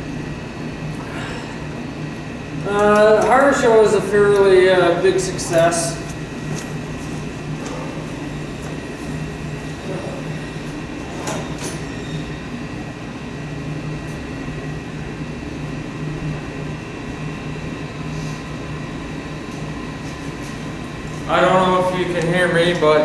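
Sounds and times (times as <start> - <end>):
mechanical drone with hum: 0.0 - 23.0.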